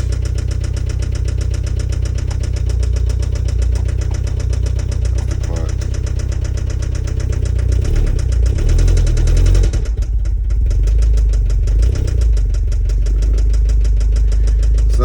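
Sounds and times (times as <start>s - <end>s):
fast even tapping: 0.0s - 8.3s
car engine running: 0.0s - 15.0s.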